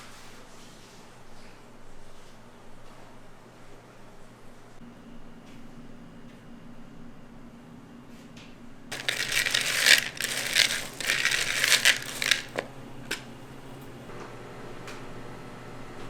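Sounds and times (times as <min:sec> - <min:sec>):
small hard objects rattling: 0:08.9 - 0:12.7.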